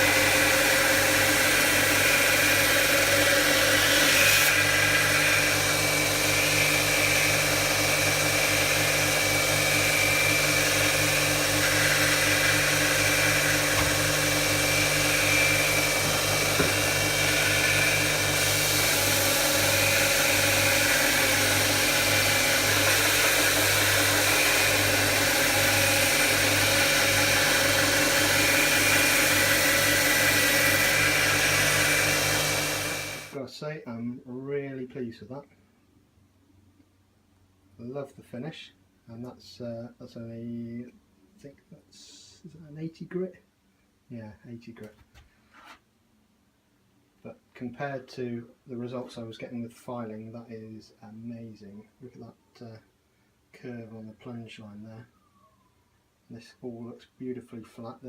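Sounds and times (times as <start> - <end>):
belt grinder motor hum: 0.0 - 33.4.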